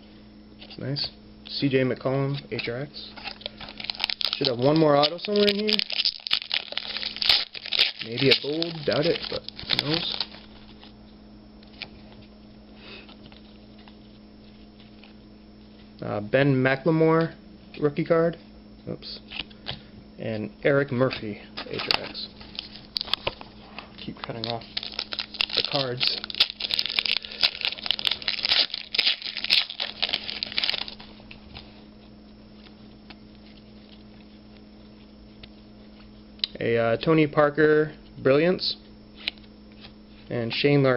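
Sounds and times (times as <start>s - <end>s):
low room hum: 0.0s - 40.9s
trading cards rustling: 2.6s - 11.0s, 21.6s - 31.9s
foil wrapper tearing and crinkling: 3.2s - 10.8s, 24.3s - 31.7s.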